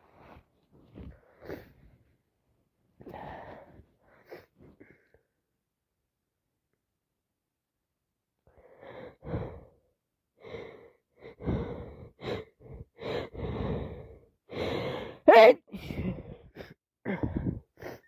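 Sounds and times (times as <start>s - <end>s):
person sniffing through congested nose: 1.3s - 1.9s.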